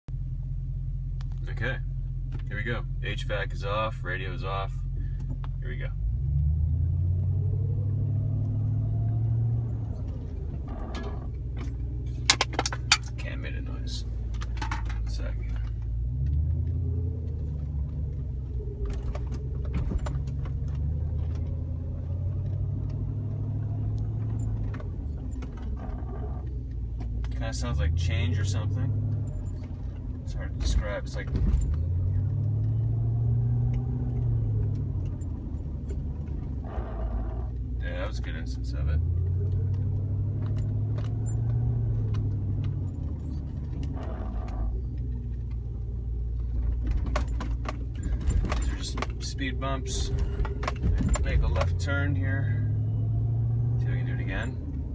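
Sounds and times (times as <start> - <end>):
car engine and road rumble: 0.0 - 54.9
light metallic clicks and rattles: 9.9 - 32.8, 37.5 - 52.5.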